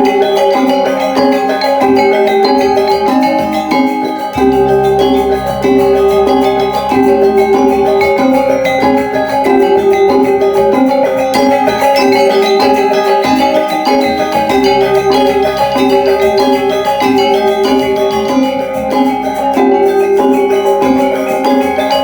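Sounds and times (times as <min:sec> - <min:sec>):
metallophones struck notes: 0:00.0 - 0:22.0
deep gong hum: 0:04.4 - 0:10.9.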